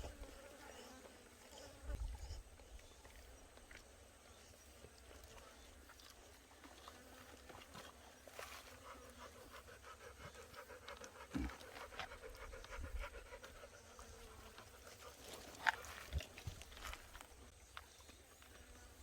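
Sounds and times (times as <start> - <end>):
dog panting: 8.6 - 16.0.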